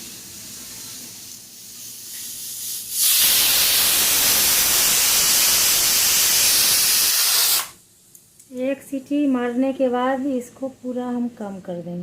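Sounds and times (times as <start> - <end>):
rush of steam: 0.0 - 7.8
pressure cooker whistle: 2.9 - 7.8.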